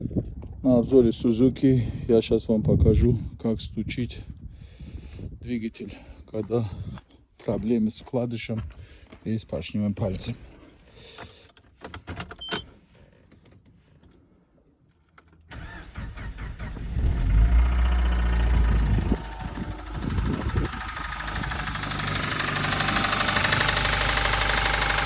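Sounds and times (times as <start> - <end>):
car engine starting and running: 15.1 - 25.0
rapid even engine knock: 18.5 - 25.0.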